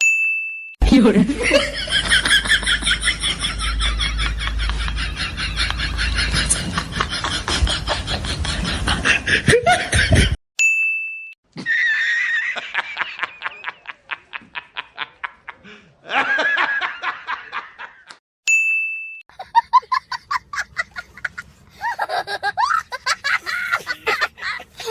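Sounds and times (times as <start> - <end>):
person laughing: 1.0 - 10.4, 19.3 - 24.9.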